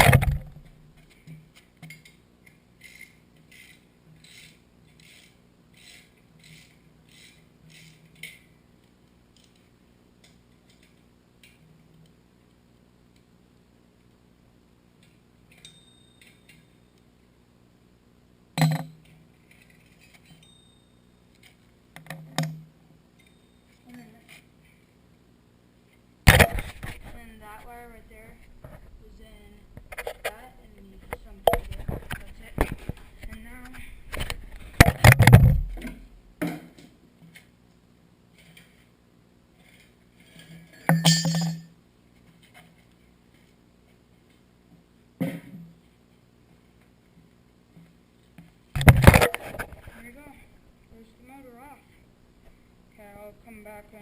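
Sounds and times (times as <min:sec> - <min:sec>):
metal tools clinking: 0:39.7 - 0:41.7
sharp metal clank: 0:40.8 - 0:41.7.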